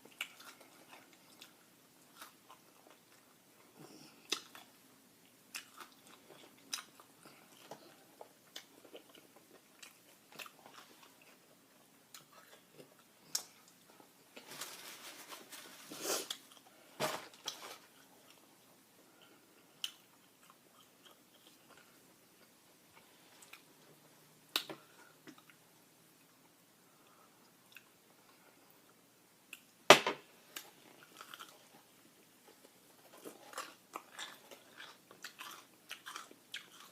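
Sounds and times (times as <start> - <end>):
chewing crunchy fried chicken: 0.0 - 14.4, 30.6 - 36.9.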